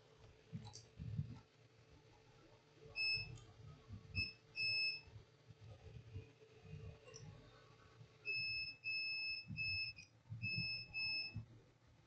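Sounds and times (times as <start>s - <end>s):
short electronic beeps: 3.0s - 3.3s, 4.2s - 5.0s, 8.3s - 11.4s.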